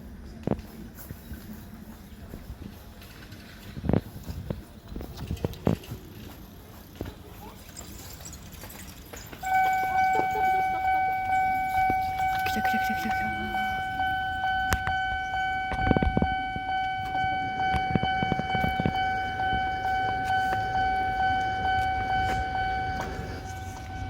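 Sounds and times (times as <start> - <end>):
level crossing bell clanging: 7.4 - 24.0.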